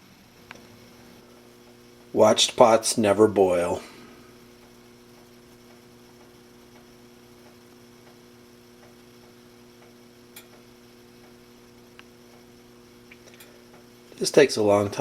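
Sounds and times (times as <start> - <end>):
faint electrical mains hum: 0.0 - 15.0
light ticks: 4.6 - 8.2, 8.8 - 12.5.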